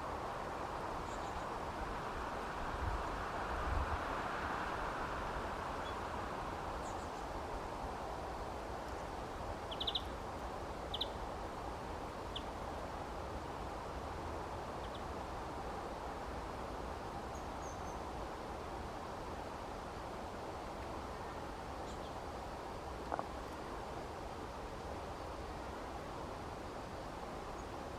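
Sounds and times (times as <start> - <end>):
steady outdoor hiss: 0.0 - 27.9
small birds chirping: 9.7 - 10.1, 10.9 - 11.2.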